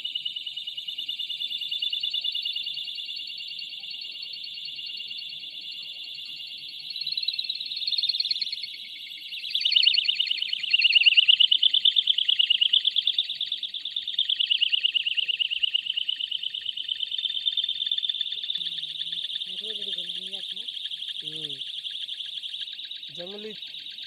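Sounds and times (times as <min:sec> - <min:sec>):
electronic alarm siren warbling: 0:18.4 - 0:21.7, 0:23.0 - 0:23.6.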